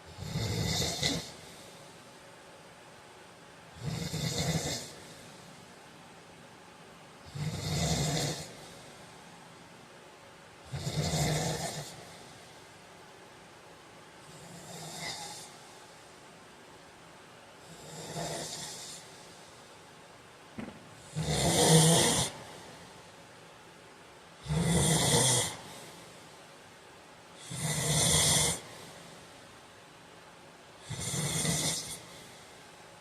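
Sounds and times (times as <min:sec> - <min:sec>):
man snoring: 0:00.1 - 0:01.4, 0:03.8 - 0:05.2, 0:07.3 - 0:08.8, 0:10.7 - 0:12.1, 0:14.3 - 0:15.5, 0:17.7 - 0:19.1, 0:21.0 - 0:22.6, 0:24.4 - 0:25.7, 0:27.4 - 0:28.8, 0:30.8 - 0:32.2.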